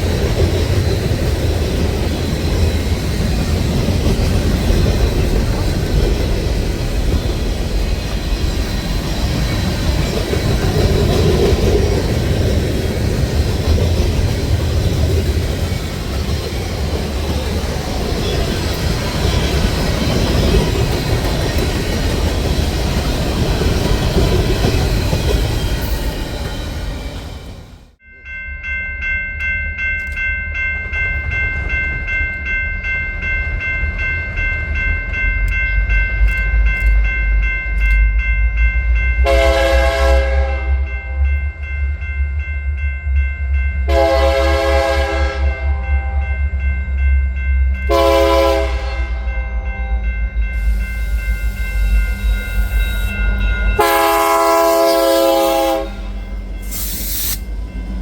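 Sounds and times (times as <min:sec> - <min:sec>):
locomotive rumbling: 0:00.0 - 0:28.0
train wheels on rails: 0:00.0 - 0:28.0, 0:30.0 - 0:58.0
steady high ringing tone: 0:00.0 - 0:39.6, 0:45.6 - 0:58.0
train horn blasts: 0:39.2 - 0:41.1, 0:43.9 - 0:46.4, 0:47.9 - 0:50.0, 0:53.8 - 0:57.0.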